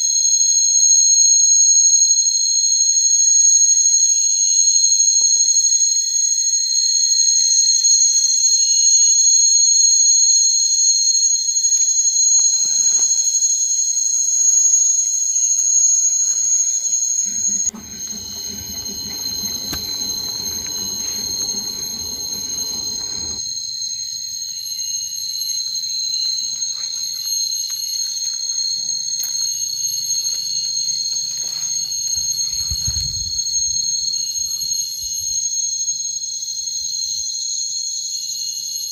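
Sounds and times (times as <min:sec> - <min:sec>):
low rumbling: 0:17.7 - 0:23.4.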